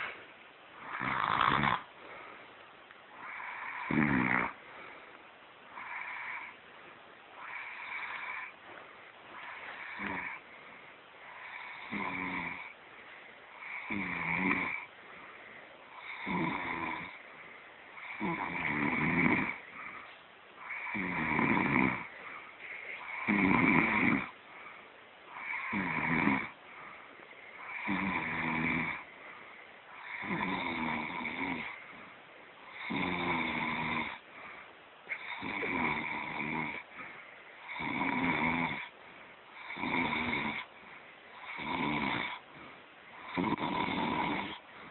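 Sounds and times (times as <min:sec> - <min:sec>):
person snoring: 0:00.8 - 0:01.9, 0:03.2 - 0:04.6, 0:05.8 - 0:06.6, 0:07.4 - 0:08.6, 0:09.4 - 0:10.4, 0:11.3 - 0:12.8, 0:13.5 - 0:14.9, 0:15.9 - 0:17.2, 0:18.0 - 0:20.0, 0:20.6 - 0:24.4, 0:25.3 - 0:26.6, 0:27.6 - 0:29.1, 0:29.9 - 0:31.9, 0:32.7 - 0:34.2, 0:35.1 - 0:38.9, 0:39.6 - 0:40.7, 0:41.4 - 0:42.4, 0:43.2 - 0:44.9.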